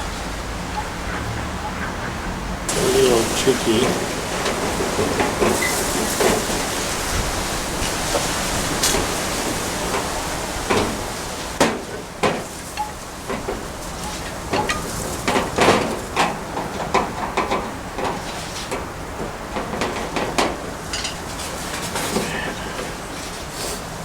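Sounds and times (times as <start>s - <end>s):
steady hiss: 2.7s - 11.6s.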